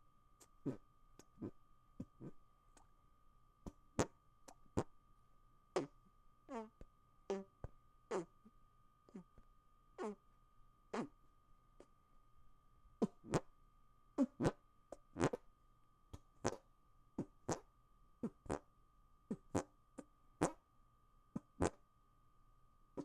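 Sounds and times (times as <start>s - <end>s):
hand fart squelches: 6.5s - 7.5s, 13.0s - 13.4s, 15.2s - 15.4s, 17.2s - 17.6s, 18.2s - 18.6s, 21.4s - 21.8s.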